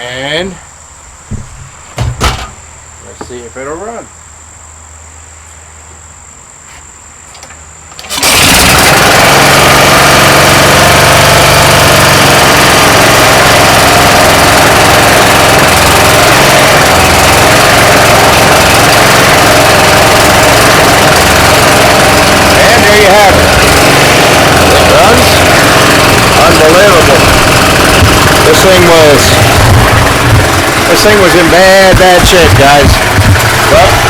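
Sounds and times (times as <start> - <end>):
rototiller engine starting and running: 7.9 - 34.0.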